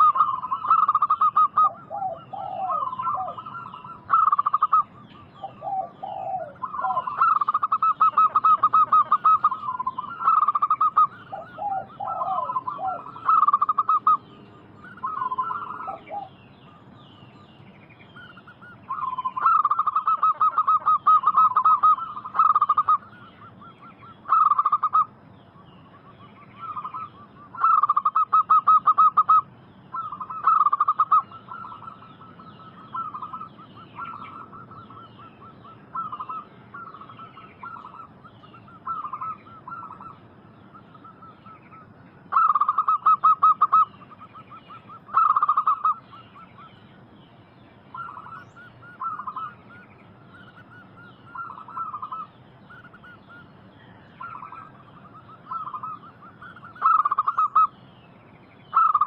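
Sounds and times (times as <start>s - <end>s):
dove cooing: 0.0s - 17.4s, 18.1s - 25.2s, 25.8s - 46.8s, 47.9s - 57.8s, 58.7s - 59.0s.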